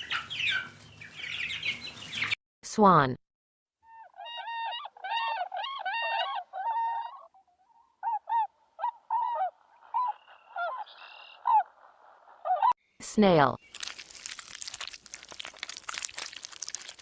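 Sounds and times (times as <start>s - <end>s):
swans honking: 7.8s - 12.7s.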